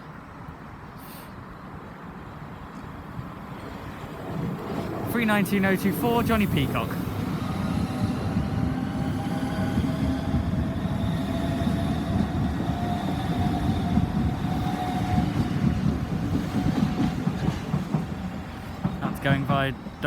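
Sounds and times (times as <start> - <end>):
faint train whine: 0.0 - 20.0
train wheels rumbling on rail: 2.8 - 20.0.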